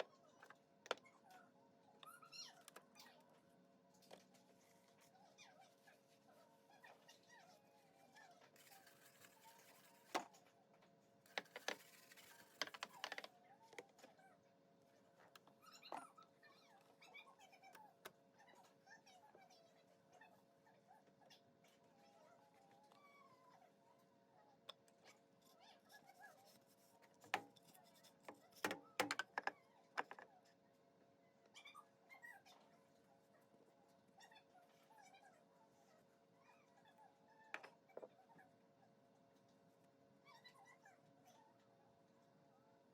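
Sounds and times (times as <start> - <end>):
sharp knocks and clicks: 28.6 - 30.2.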